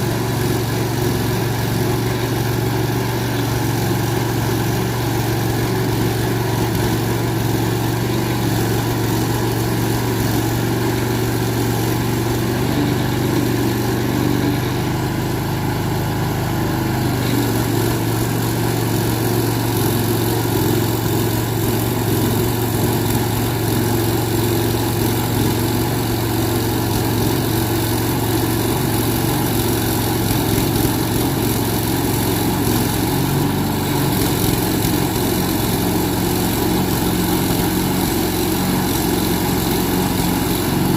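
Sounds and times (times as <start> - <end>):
sawmill engine running: 0.0 - 40.9.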